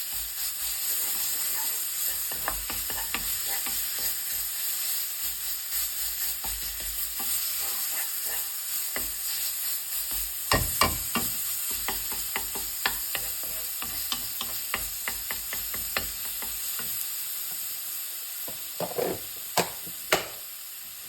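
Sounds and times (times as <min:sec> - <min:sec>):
food sizzling in a pan: 0:00.0 - 0:21.0
utensil scraping a pan: 0:00.1 - 0:05.0, 0:05.7 - 0:16.9, 0:18.8 - 0:19.3.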